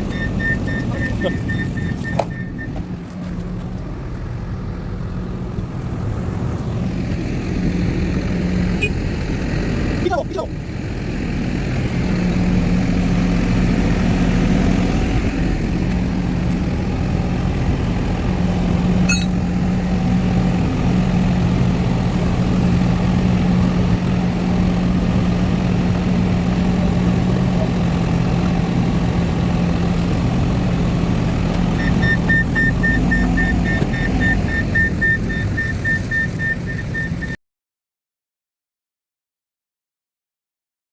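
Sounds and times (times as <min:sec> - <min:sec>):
high warning beeping: 0:00.0 - 0:02.8, 0:19.1 - 0:19.4, 0:31.8 - 0:37.4
vehicle engine running: 0:00.0 - 0:37.4.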